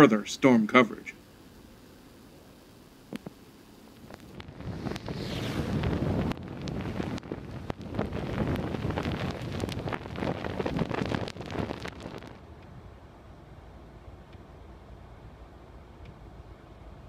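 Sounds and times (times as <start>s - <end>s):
pops and crackles: 3.1s - 12.4s
wind buffeting microphone: 4.0s - 12.4s.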